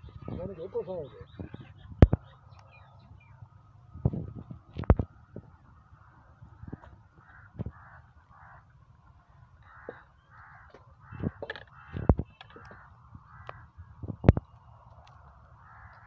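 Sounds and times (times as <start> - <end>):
crows cawing: 5.8 - 14.0, 15.4 - 16.0.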